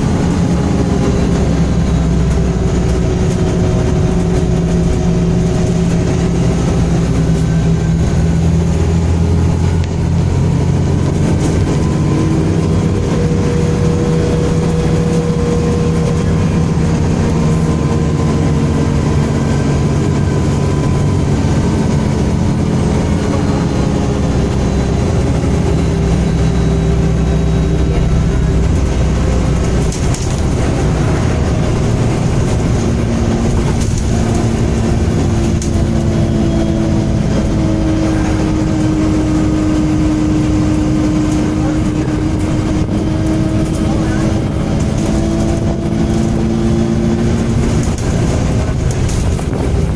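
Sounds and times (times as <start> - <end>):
bus engine drone: 0.0 - 49.9.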